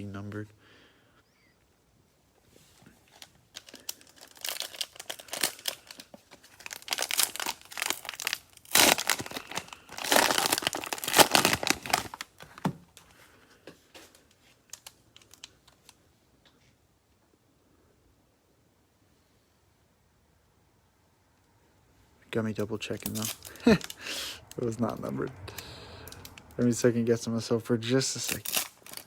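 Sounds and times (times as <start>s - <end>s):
plastic wrapper crinkling and tearing: 3.1s - 12.7s, 14.0s - 16.0s, 22.9s - 26.7s, 28.2s - 29.0s.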